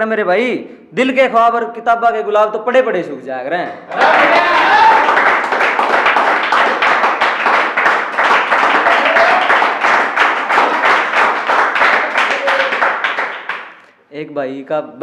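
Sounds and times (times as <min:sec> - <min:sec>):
audience clapping: 0:03.8 - 0:13.9.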